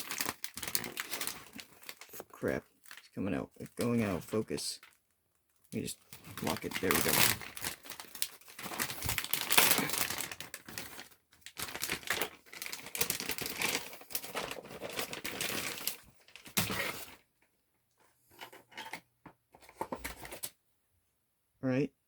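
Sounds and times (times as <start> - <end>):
packaging crinkling and tearing: 0.0 - 5.0, 5.7 - 17.2.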